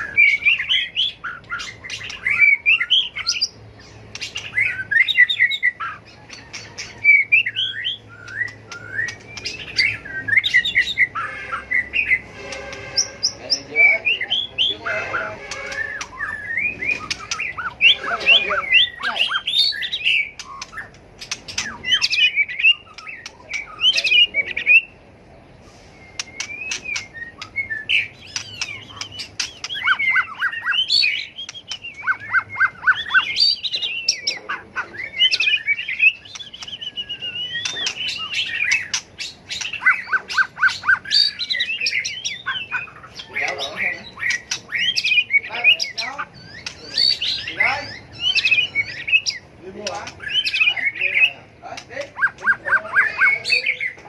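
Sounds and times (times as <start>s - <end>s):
bird singing whistled phrases: 0.0s - 12.3s, 13.0s - 25.0s, 25.7s - 34.4s, 35.0s - 49.5s, 50.2s - 51.4s
bird sharp clicks: 20.3s - 22.1s, 26.1s - 27.6s, 28.2s - 30.0s, 36.2s - 39.8s.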